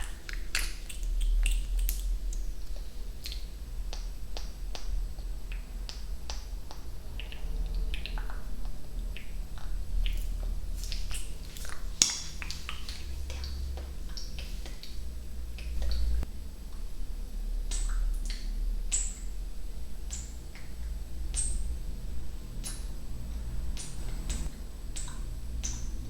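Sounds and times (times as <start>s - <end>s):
wet tongue clicks and mouth pops: 0.0s - 8.4s, 23.8s - 26.0s
steady low hum: 0.0s - 26.0s.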